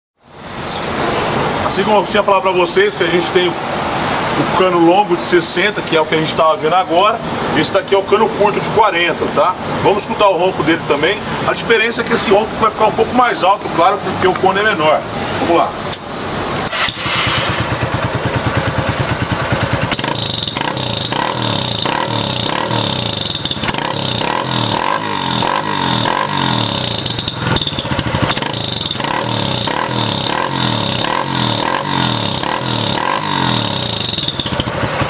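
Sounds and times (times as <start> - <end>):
motorcycle engine revving: 16.3 - 35.0.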